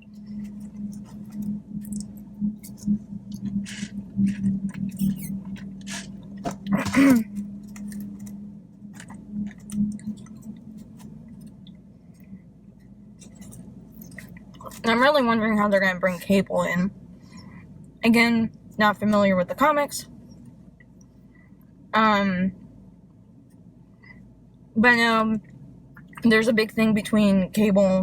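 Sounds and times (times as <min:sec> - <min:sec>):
woman chewing food: 0:00.0 - 0:12.3, 0:13.2 - 0:14.9.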